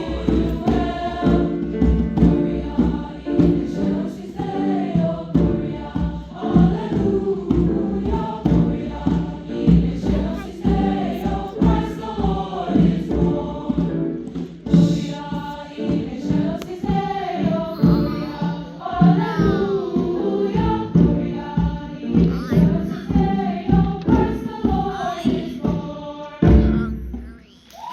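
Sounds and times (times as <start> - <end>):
rhythmic accompaniment: 0.0 - 27.6
choir singing: 0.0 - 27.9.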